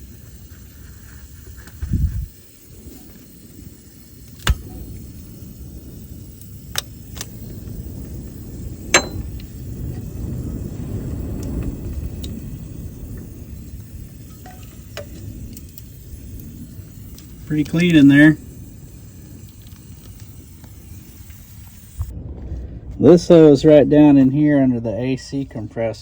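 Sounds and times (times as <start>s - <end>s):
low steady rumble: 0.0s - 26.0s
metallic clinks of tools: 8.9s - 9.5s.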